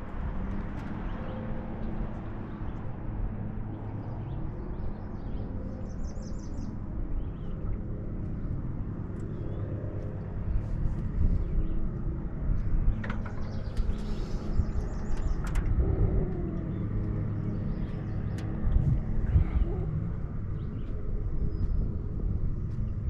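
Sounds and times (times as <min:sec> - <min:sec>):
low outdoor rumble: 0:00.0 - 0:23.0
small birds chirping: 0:03.8 - 0:23.0
faint even hum: 0:06.7 - 0:23.0.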